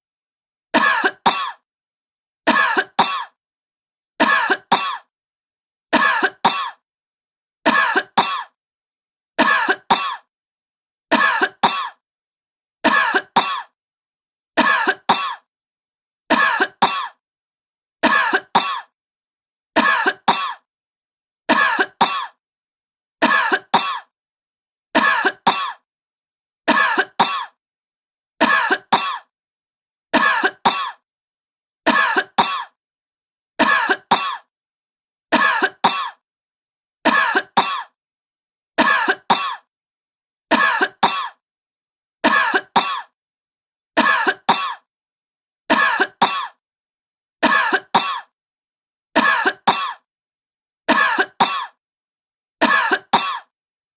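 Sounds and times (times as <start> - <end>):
woman coughing: 0.8 - 1.6, 2.5 - 3.4, 4.2 - 5.1, 6.0 - 6.8, 7.7 - 8.6, 9.4 - 10.3, 11.1 - 12.0, 12.9 - 13.8, 14.6 - 15.5, 16.4 - 17.2, 18.0 - 19.0, 19.8 - 20.7, 21.5 - 22.4, 23.2 - 24.1, 25.0 - 25.8, 26.7 - 27.6, 28.4 - 29.3, 30.2 - 31.0, 31.9 - 32.8, 33.6 - 34.5, 35.4 - 36.2, 37.1 - 38.0, 38.8 - 39.7, 40.6 - 41.4, 42.3 - 43.2, 44.0 - 44.9, 45.7 - 46.6, 47.5 - 48.3, 49.2 - 50.1, 50.9 - 51.8, 52.6 - 53.5.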